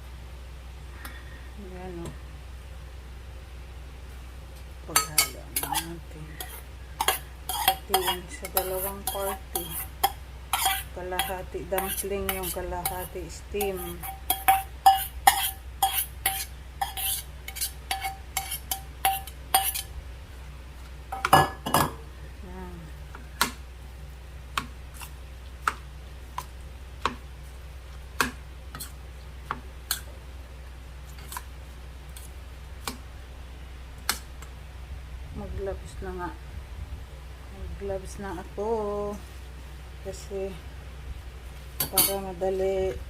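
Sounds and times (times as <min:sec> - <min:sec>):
metal utensil clinking on bowl: 0:04.9 - 0:19.9, 0:41.8 - 0:42.2.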